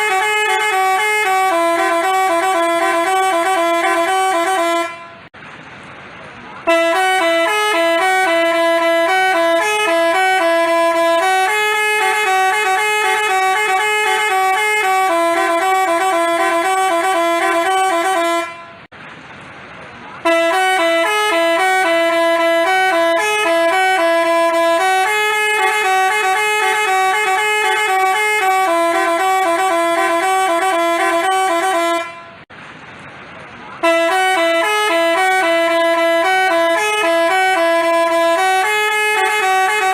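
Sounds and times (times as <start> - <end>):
multi-tone horn melody: 0.0 - 5.3, 6.6 - 18.9, 20.2 - 32.5, 33.8 - 39.9.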